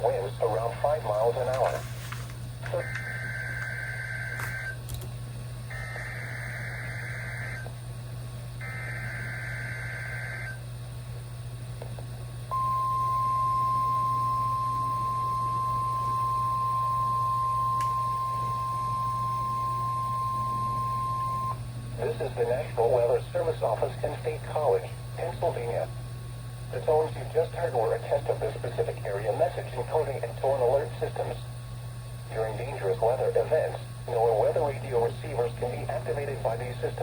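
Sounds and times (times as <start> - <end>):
low hum: 0.0 - 37.0
steady warning alarm tone: 2.6 - 4.8, 5.7 - 7.7, 8.6 - 10.7, 12.5 - 25.8
warbling data tones: 2.7 - 4.8, 5.7 - 7.6, 8.6 - 10.6.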